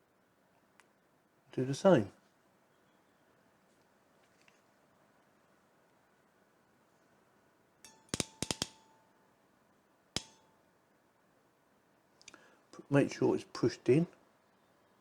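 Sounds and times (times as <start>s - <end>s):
short metallic ring: 7.8s - 9.2s, 10.2s - 10.6s
ratchet crimping tool clicking: 7.9s - 8.8s.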